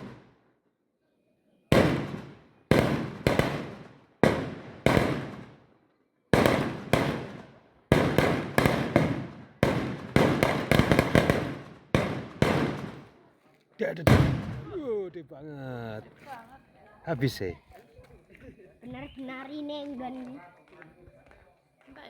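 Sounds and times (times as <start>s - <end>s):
firecrackers banging: 0.0s - 0.2s, 1.7s - 5.6s, 6.4s - 13.2s, 14.1s - 14.8s.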